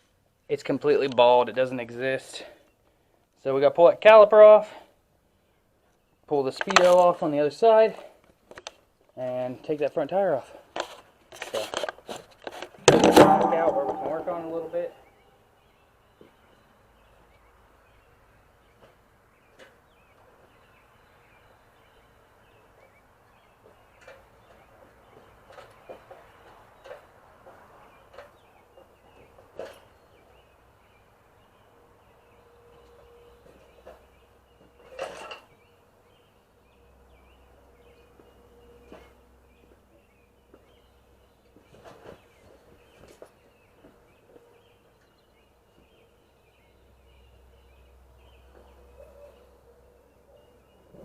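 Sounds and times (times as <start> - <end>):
birds chirping: 12.9 - 51.0.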